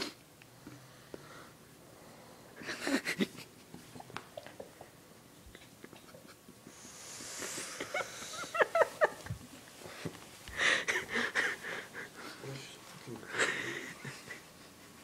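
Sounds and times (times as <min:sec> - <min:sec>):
burst of breathy noise: 0:06.7 - 0:08.5.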